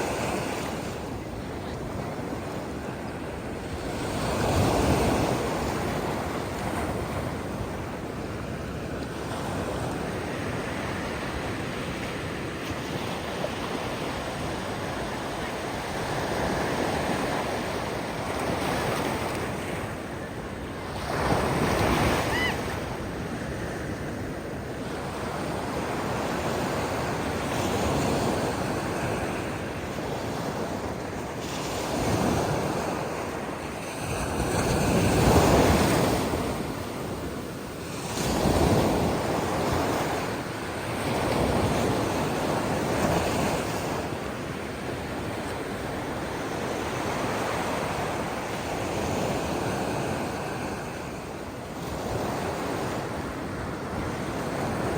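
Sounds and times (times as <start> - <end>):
ocean waves breaking: 0.0 - 54.9.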